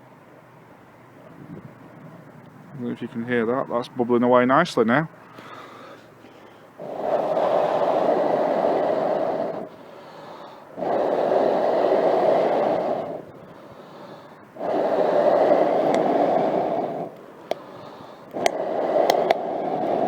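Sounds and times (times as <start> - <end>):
breaths blown into fire: 5.5 - 20.0.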